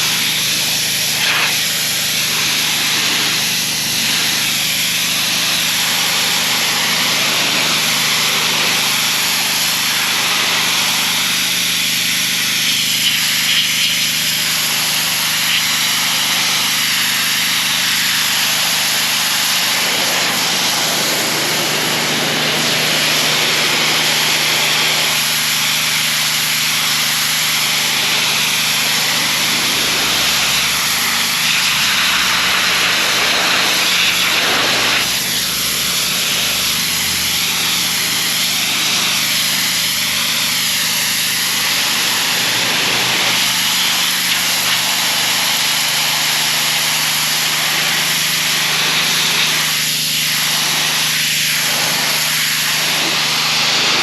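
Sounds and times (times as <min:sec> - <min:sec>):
pressure washer engine humming: 0:00.0 - 0:54.0
water jet hissing: 0:00.0 - 0:54.0.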